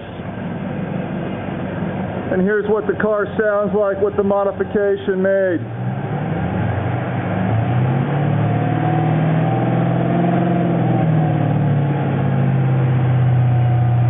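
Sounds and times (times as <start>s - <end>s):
deep car exhaust idling: 0.0s - 14.0s.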